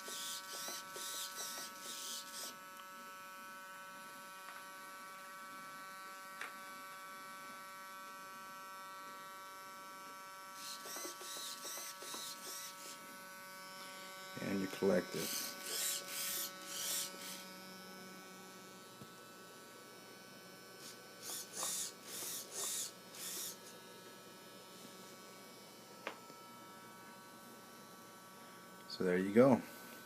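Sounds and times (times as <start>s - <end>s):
servos whirring: 0.0s - 2.6s, 10.6s - 13.1s, 14.4s - 18.5s, 20.8s - 23.8s
thin electronic whine: 0.0s - 3.0s, 10.6s - 30.0s.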